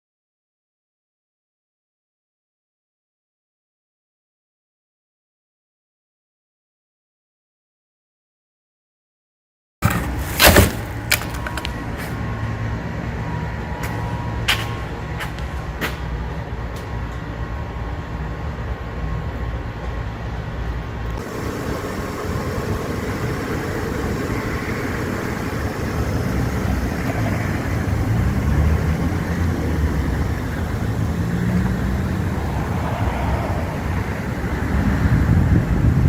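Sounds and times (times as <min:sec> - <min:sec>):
car engine running: 0:21.2 - 0:36.0
rough rushing noise: 0:21.2 - 0:36.0.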